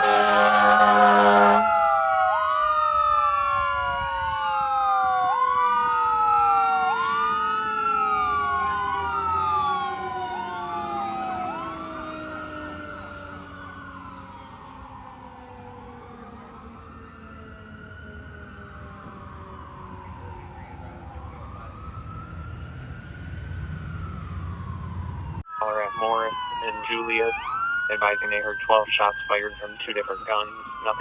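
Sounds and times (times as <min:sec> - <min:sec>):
fire engine air horn: 0:00.0 - 0:02.0, 0:06.8 - 0:07.8
siren sweeping: 0:00.0 - 0:31.0
siren winding down: 0:00.0 - 0:31.0.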